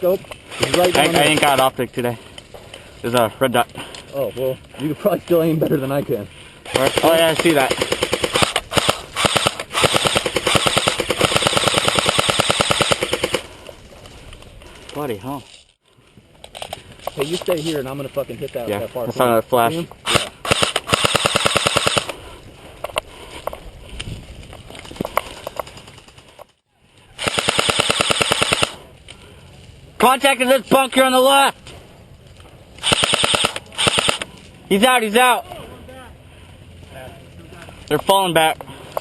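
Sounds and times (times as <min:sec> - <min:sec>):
airsoft gun firing bursts: 0:00.5 - 0:01.7, 0:06.7 - 0:13.5, 0:20.0 - 0:22.2, 0:27.2 - 0:28.8, 0:32.8 - 0:34.3
airsoft gun single shots: 0:32.8 - 0:34.3.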